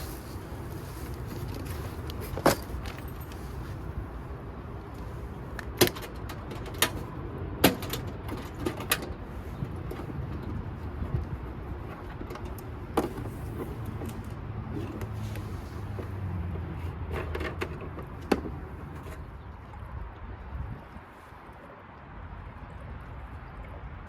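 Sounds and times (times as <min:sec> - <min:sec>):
sharp clicks and knocks: 0:05.6 - 0:07.0.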